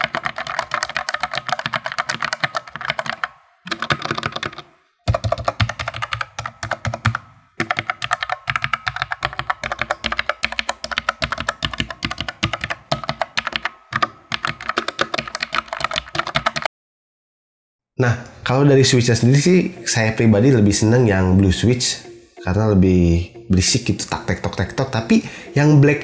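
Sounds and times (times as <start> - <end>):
mechanical keyboard typing: 0.0 - 16.7.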